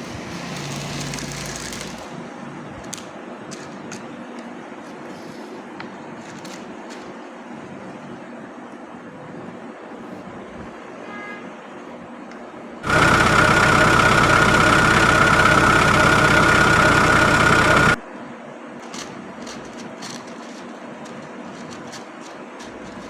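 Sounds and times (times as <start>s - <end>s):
toy vehicle electronic engine sound: 12.8s - 18.0s.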